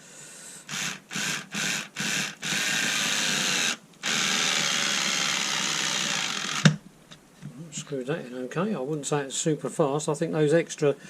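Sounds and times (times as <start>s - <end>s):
cordless screwdriver motor running: 0.7s - 6.8s.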